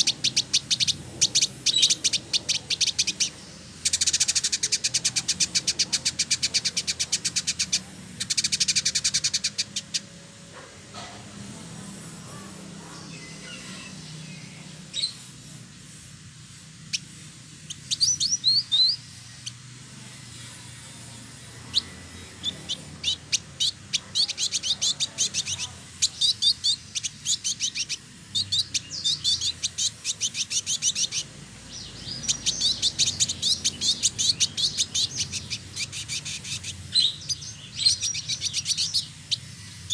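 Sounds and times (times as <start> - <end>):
bird rapid high chattering song: 0.0 - 10.5, 11.2 - 39.9.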